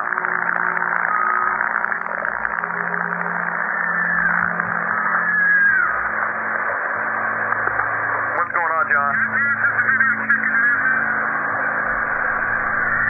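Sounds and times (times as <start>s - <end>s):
faint high wavering cries: 2.6s - 7.4s, 9.1s - 13.0s.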